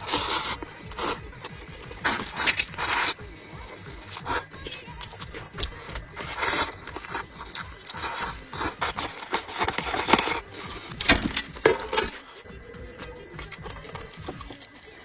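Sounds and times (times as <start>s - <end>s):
chewing and crunching food: 0.0s - 15.0s
small scrapes and clicks: 4.0s - 12.3s.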